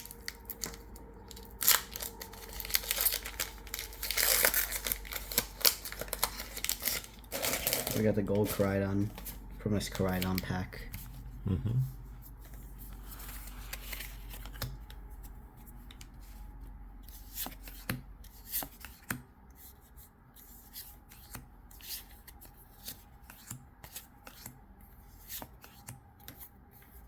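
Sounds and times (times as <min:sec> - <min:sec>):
cards clicking and sliding: 0:13.2 - 0:15.0, 0:17.1 - 0:19.3, 0:20.0 - 0:24.6.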